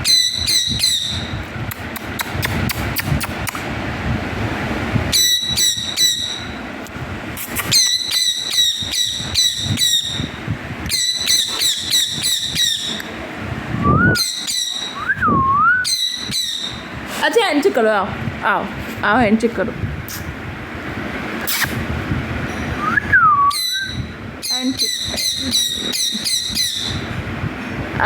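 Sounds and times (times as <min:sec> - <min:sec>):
parrot screeching: 0:07.7 - 0:10.3, 0:10.9 - 0:13.0, 0:14.2 - 0:15.0, 0:15.8 - 0:16.9, 0:23.5 - 0:27.1
wavering whistle: 0:13.8 - 0:16.8, 0:22.8 - 0:24.1.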